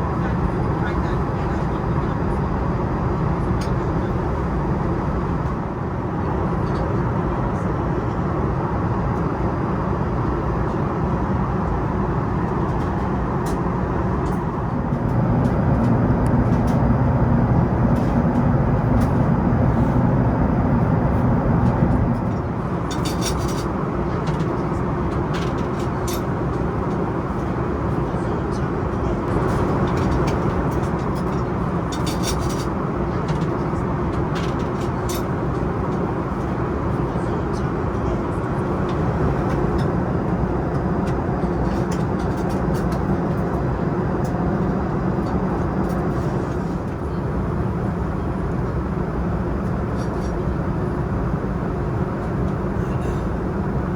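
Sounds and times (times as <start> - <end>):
aircraft cabin rushing noise: 12.7 - 24.6.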